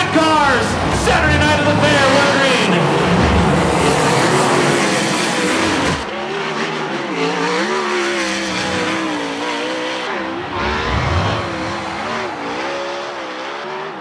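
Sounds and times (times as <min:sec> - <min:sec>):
race car engines revving: 0:00.0 - 0:14.0
deep rumble: 0:10.2 - 0:12.8.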